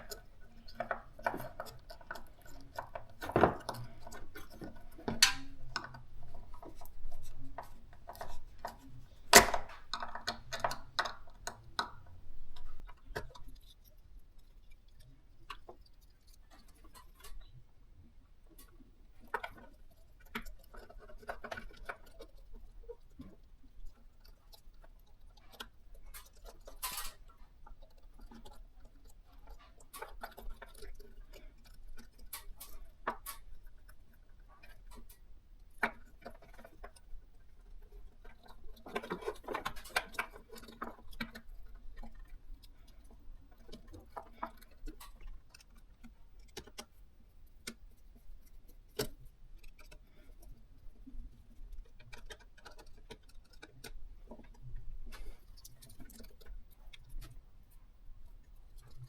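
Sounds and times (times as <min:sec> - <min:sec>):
rustling handling noise: 0:00.0 - 0:13.5
small clicks and taps: 0:00.0 - 0:17.6, 0:18.5 - 0:59.0.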